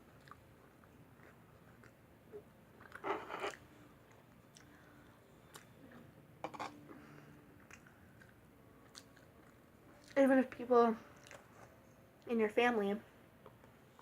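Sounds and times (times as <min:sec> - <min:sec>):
person chewing food: 0:00.2 - 0:02.0, 0:02.7 - 0:06.6, 0:07.6 - 0:10.2, 0:11.2 - 0:11.7.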